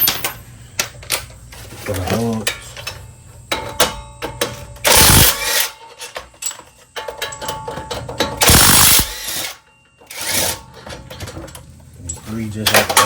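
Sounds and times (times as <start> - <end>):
impact wrench bursts: 4.8 - 5.8, 8.4 - 10.6.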